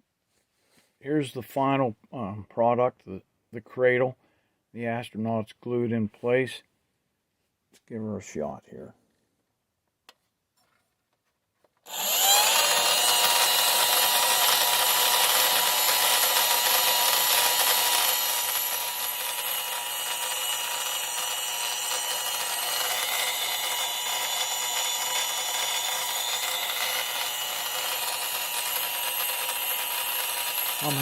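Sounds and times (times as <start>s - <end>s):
small electric fan whirring: 11.8s - 31.0s.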